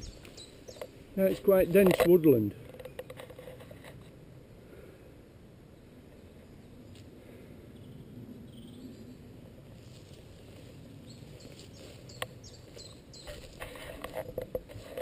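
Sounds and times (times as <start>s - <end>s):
bird chirping: 0.0s - 0.9s, 11.0s - 13.4s
footsteps crunching dead leaves: 9.6s - 14.1s.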